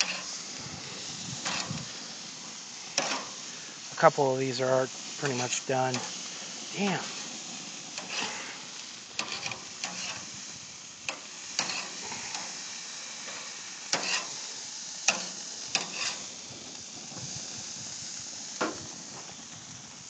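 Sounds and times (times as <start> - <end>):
utensil scraping metal grate: 0.0 - 0.4, 1.1 - 2.0, 2.8 - 4.3, 5.2 - 10.4, 11.0 - 12.6, 13.2 - 14.4, 15.0 - 16.3
patties sizzling on a grill: 0.0 - 20.0.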